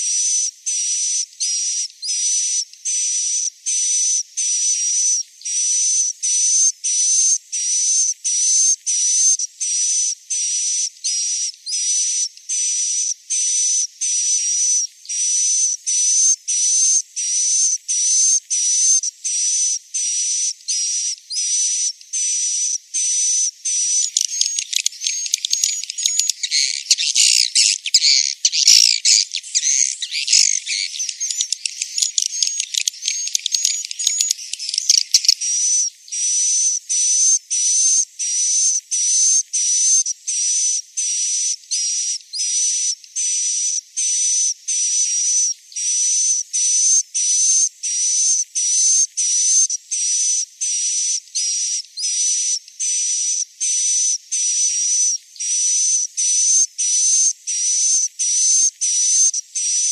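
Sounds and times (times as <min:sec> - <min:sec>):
buzzy high bird chirp: 0:22.2 - 0:36.5
chatter of overlapping twitters: 0:23.2 - 0:35.8.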